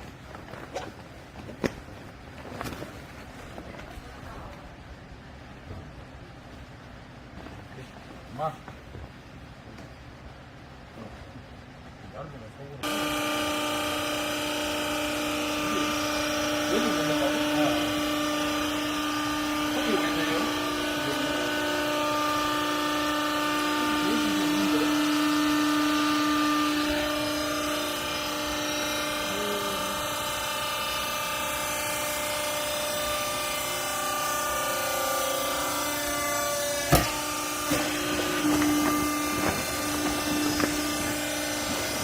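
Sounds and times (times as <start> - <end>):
baler machine hum: 0.0 - 42.0.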